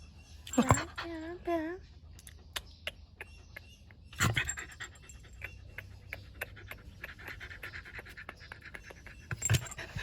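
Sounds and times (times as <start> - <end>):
dog panting: 4.2 - 10.0.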